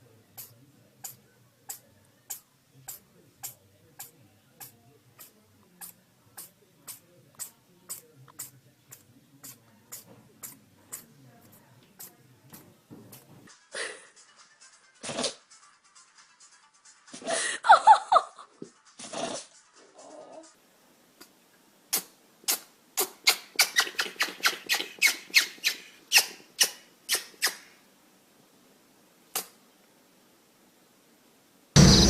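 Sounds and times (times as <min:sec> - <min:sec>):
small pet sneezing: 0:00.4 - 0:11.1, 0:19.0 - 0:19.5, 0:21.9 - 0:27.7, 0:29.3 - 0:29.6.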